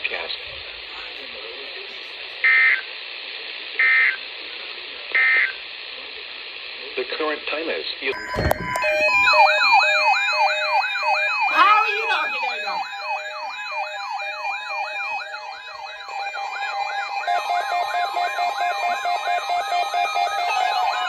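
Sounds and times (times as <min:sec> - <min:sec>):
electronic siren alarms: 0:08.1 - 0:21.0
steady alarm tones: 0:08.1 - 0:21.0.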